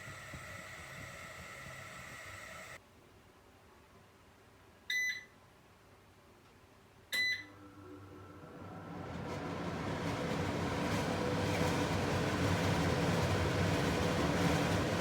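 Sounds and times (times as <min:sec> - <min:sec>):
extractor fan whirring: 0:00.0 - 0:02.8, 0:08.0 - 0:15.0.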